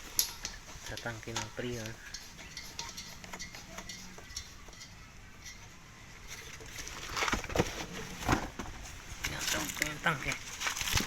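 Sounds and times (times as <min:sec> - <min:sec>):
hose fitting clicks and scrapes: 0:00.0 - 0:05.7.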